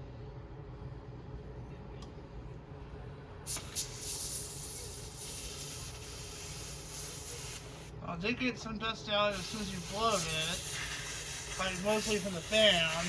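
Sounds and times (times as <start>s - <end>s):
compressed air spraying: 3.4s - 7.9s, 9.3s - 13.0s.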